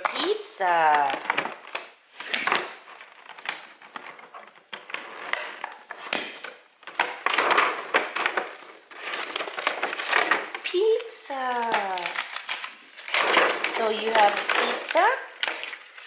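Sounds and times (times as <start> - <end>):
wooden toys clacking together: 0.0 - 16.0
rustling scrape: 7.7 - 10.5.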